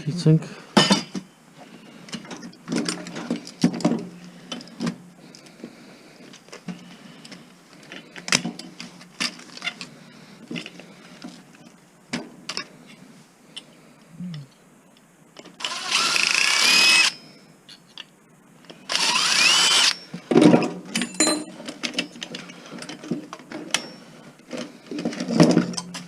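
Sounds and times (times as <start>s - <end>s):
metal parts and tools clinking: 19.8s - 26.0s.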